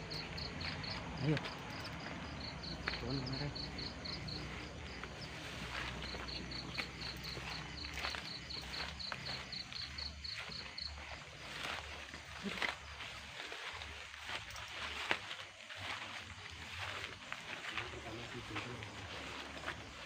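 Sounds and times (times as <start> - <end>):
cricket chirping: 0.0 - 20.0
rustles and footstep scuffs: 0.0 - 20.0.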